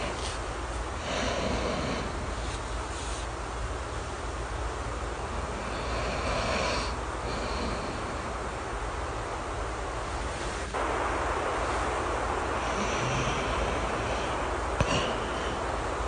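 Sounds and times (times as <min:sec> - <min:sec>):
soft snoring breath: 0:00.0 - 0:00.4, 0:01.0 - 0:03.3, 0:05.4 - 0:08.5, 0:12.6 - 0:15.8
steady rain: 0:00.0 - 0:16.0
low rumble: 0:07.0 - 0:16.0.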